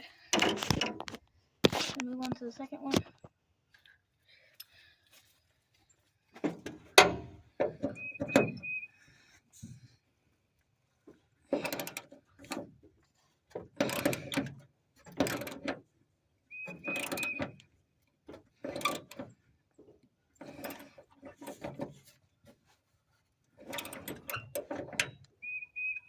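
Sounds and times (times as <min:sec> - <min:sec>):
short high squeak: 0:16.5 - 0:17.5.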